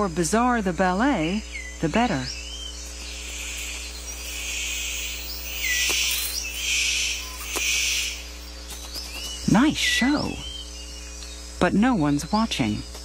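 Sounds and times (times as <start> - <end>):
insects buzzing in pulses: 0.0 - 13.0
falling bird chirps: 1.6 - 11.4.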